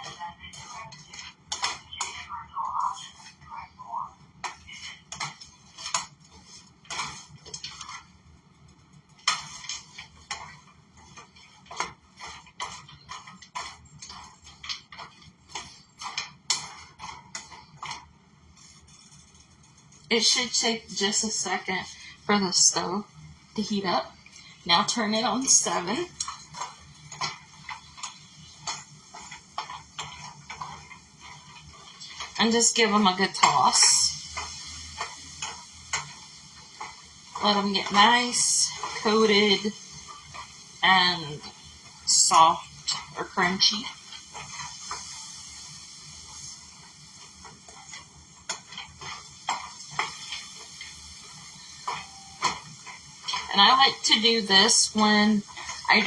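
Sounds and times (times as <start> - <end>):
nuts sizzling in a frying pan: 9.2 - 18.6, 20.1 - 56.0
nuts and spatula clicking in pan: 25.8 - 32.4, 47.4 - 54.0.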